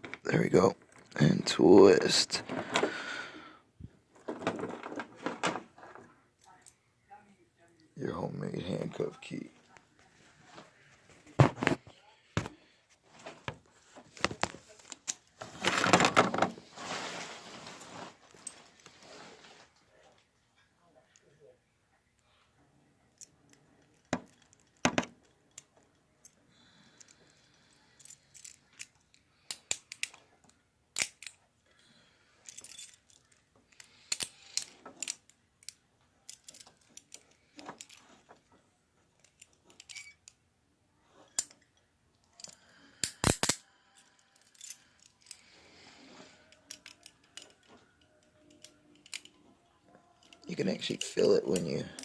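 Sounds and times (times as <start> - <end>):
metal handcuffs clicking and jangling: 23.1 - 30.2, 30.9 - 31.4, 32.4 - 38.2, 39.2 - 40.4, 41.3 - 45.5, 46.4 - 49.4, 50.0 - 52.0.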